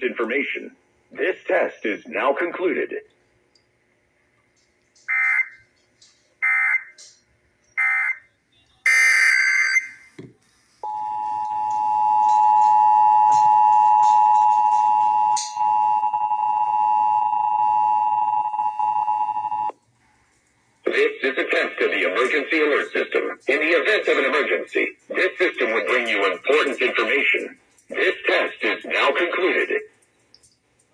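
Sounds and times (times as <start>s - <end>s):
two-tone attention signal: 10.8s - 19.7s.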